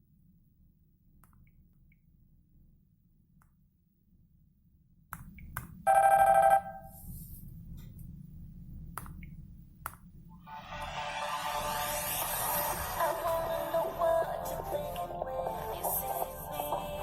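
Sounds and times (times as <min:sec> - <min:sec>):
mobile phone power chime: 0:05.9 - 0:07.0
faint speaker hiss: 0:06.7 - 0:17.0.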